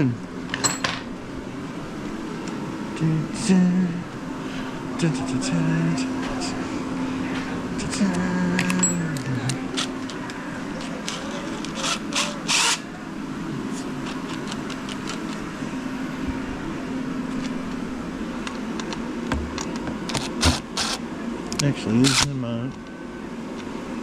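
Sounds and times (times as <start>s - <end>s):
steady background hum: 0.0s - 24.0s.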